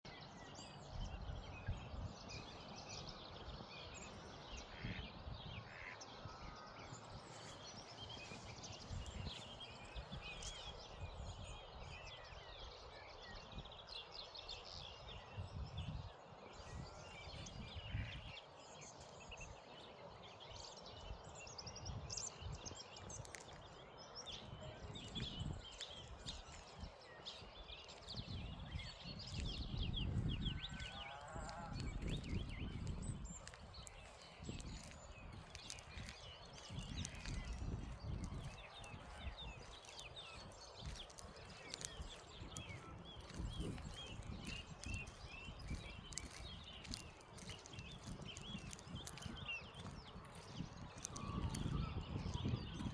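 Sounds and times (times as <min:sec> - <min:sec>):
small birds chirping: 0:00.1 - 0:52.9
wind rumbling on microphone: 0:00.1 - 0:52.9.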